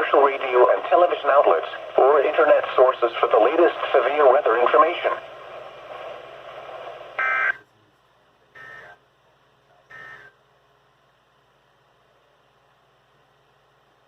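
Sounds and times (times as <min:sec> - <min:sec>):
faint radio hiss: 0:00.0 - 0:14.0
buzzing data signal bursts: 0:07.2 - 0:07.6, 0:09.9 - 0:10.4.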